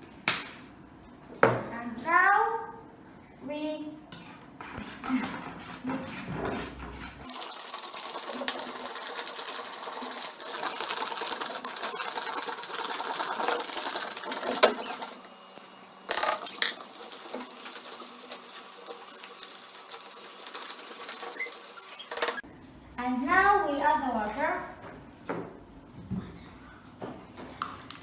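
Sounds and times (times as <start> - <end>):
spoon scraping a bowl: 16.1 - 22.4.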